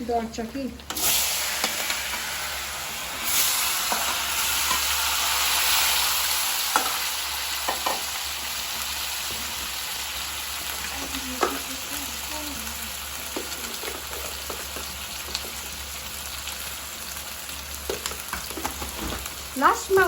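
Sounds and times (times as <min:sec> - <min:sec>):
spices sizzling in oil: 0:00.1 - 0:20.0.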